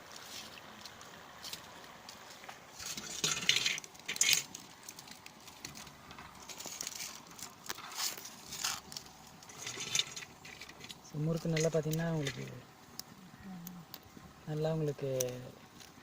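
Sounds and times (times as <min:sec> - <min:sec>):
metal utensil scraping frying pan: 0:02.8 - 0:04.6, 0:09.5 - 0:12.6.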